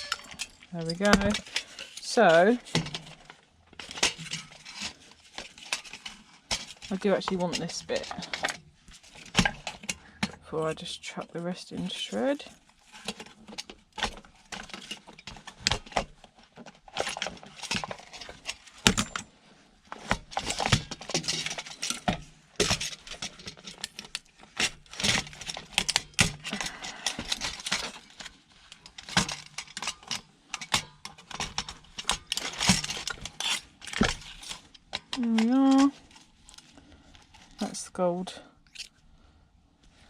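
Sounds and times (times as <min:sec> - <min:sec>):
plastic and metal clicks and rattles: 0:19.9 - 0:36.7.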